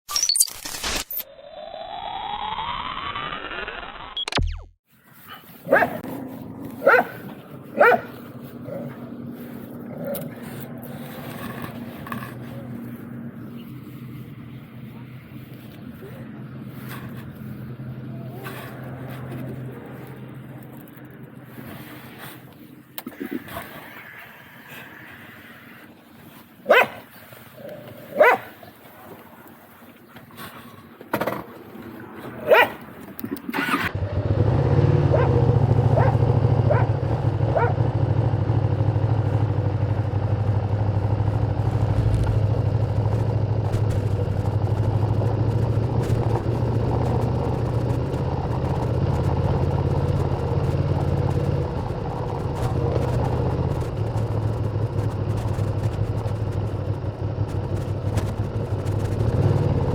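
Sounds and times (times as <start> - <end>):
motorcycle engine starting and idling: 5.7 - 21.9, 33.1 - 59.9.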